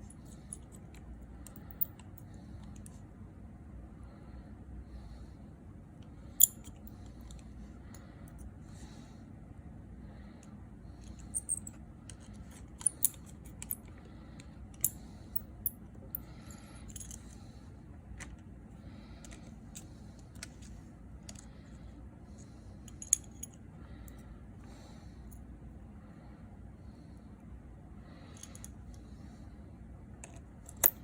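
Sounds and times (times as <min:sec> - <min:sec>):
quiet handling sounds: 0:00.0 - 0:03.2, 0:10.3 - 0:25.5.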